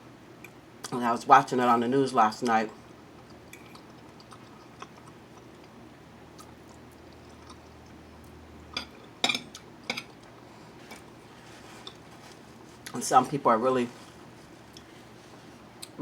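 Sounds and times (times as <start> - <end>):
person chewing food: 3.0 - 13.0, 14.0 - 16.0.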